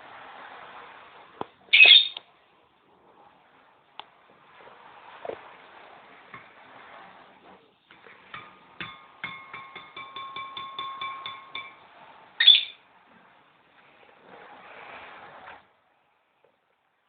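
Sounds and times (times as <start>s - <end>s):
bird rising squawk: 1.7s - 2.2s, 12.4s - 12.8s
pet bird calling ringing notes: 12.4s - 12.8s.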